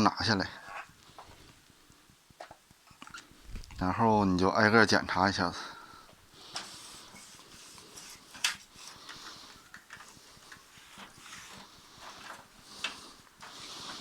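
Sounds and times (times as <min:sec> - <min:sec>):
plastic clicks and rustling: 0:07.8 - 0:14.0.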